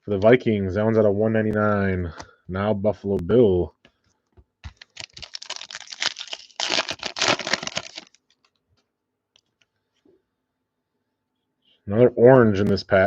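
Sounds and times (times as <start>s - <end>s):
wrapper tearing and crinkling: 4.6s - 8.6s.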